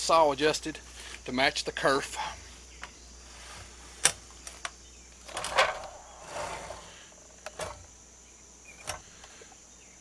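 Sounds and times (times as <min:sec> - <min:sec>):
scraping rustle: 0:03.2 - 0:07.9.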